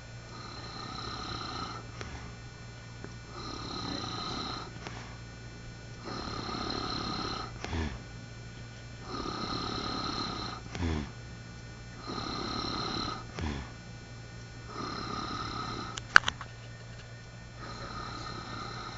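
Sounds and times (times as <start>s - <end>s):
man snoring: 0.0s - 2.4s, 3.3s - 5.2s, 6.0s - 8.2s, 8.9s - 11.3s, 11.9s - 13.8s, 14.6s - 16.0s, 17.5s - 18.9s
sharp clicks: 15.9s - 17.3s.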